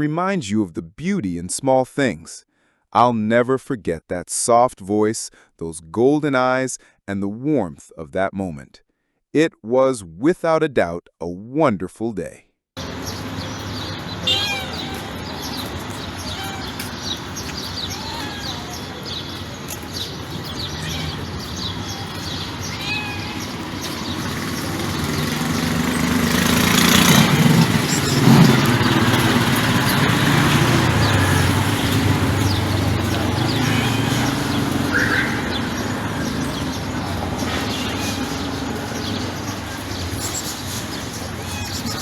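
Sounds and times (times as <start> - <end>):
vehicle engine and road noise: 12.8 - 42.0.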